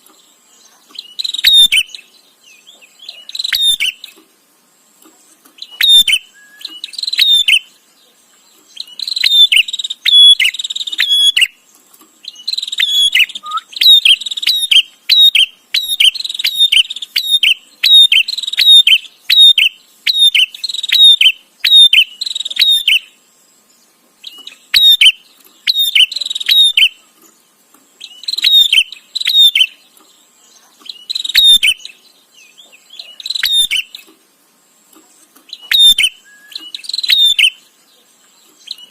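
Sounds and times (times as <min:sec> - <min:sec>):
bird chattering: 0:02.9 - 0:04.2, 0:08.8 - 0:11.6, 0:12.2 - 0:23.1, 0:24.2 - 0:27.0, 0:32.6 - 0:34.1, 0:35.5 - 0:37.6.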